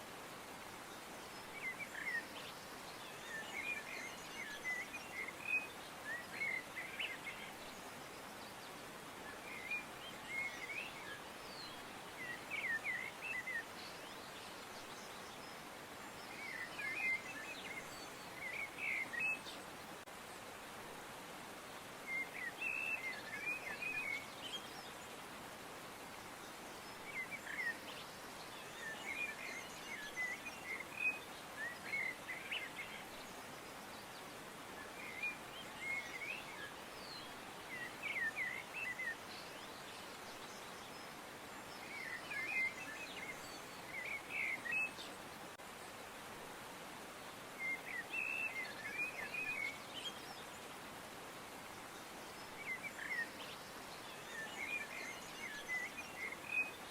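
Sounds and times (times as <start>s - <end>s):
outdoor background hiss: 0.0s - 56.9s.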